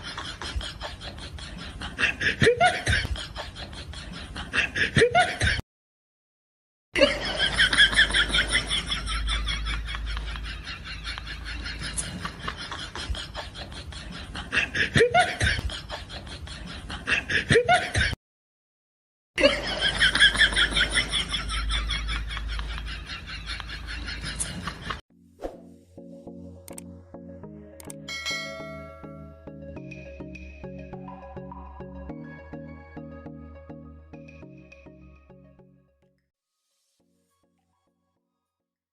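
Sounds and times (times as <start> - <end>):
person laughing: 0.0 - 5.6, 7.0 - 18.2.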